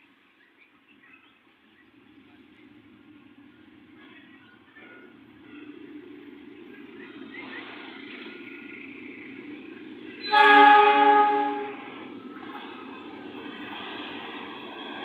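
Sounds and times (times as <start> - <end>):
train rumble: 0.0 - 15.0
train horn blast: 10.2 - 12.0.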